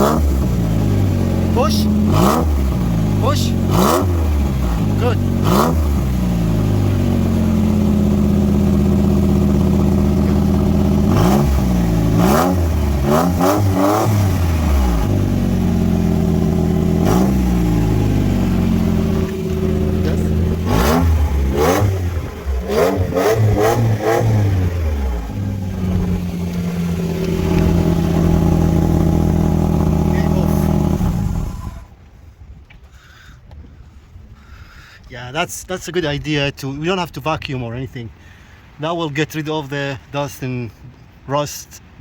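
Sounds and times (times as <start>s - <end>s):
car engine idling and revving: 0.0s - 32.0s.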